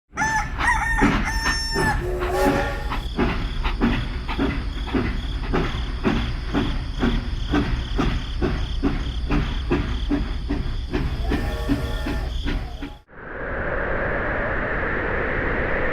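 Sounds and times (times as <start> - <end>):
rooster crowing: 0.1 - 3.1, 11.2 - 13.0
rhythmic chugging: 0.5 - 13.1.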